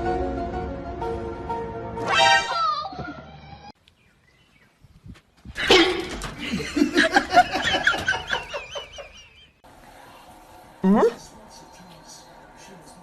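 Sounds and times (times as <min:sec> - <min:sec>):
person laughing hard: 0:05.6 - 0:09.6.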